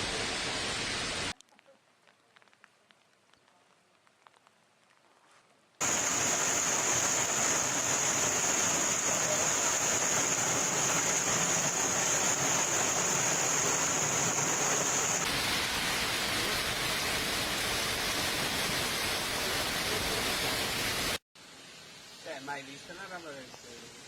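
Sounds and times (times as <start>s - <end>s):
heavy storm downpour: 5.8s - 21.2s.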